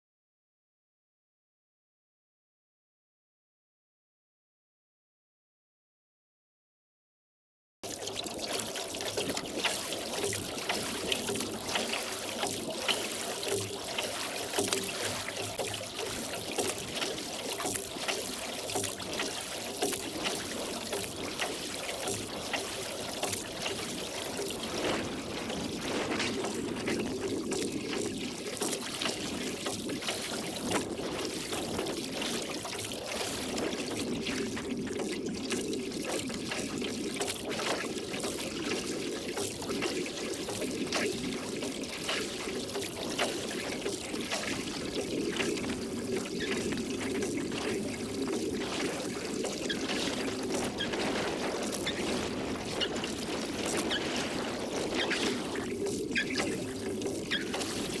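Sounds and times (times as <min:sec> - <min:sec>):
oars splashing water: 0:07.8 - 0:58.0.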